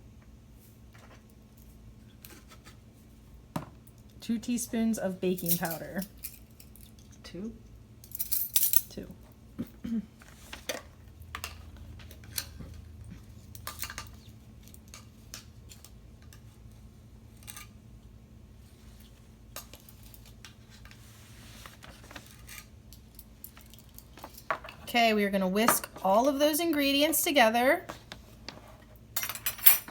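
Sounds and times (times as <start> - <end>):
utensils clinking against bowls: 5.3 - 7.0, 25.6 - 26.3.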